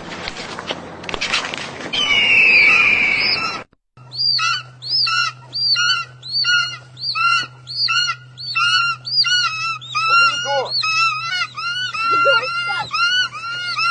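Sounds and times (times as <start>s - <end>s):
steady low hum: 0.0s - 13.9s
bird calling: 1.9s - 13.9s
noisy falling high tone: 2.0s - 3.7s.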